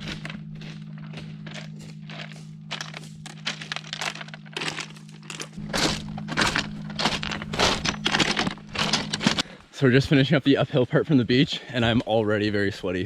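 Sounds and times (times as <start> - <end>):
gear rustling: 0.0 - 9.5
footsteps on gravel: 0.0 - 9.6.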